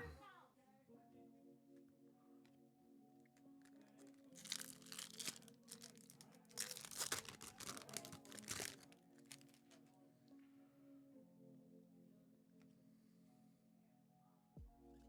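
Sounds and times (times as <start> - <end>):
quiet background music: 0.0 - 15.0
wrapper crinkling and tearing: 3.6 - 9.8.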